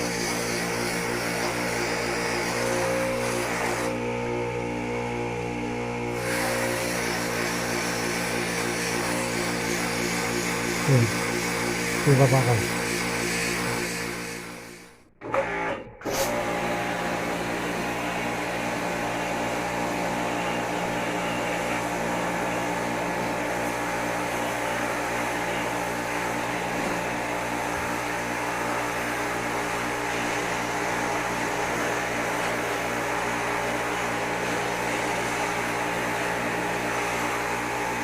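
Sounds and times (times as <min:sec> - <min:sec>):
motor-driven machine humming: 0:00.0 - 0:15.4.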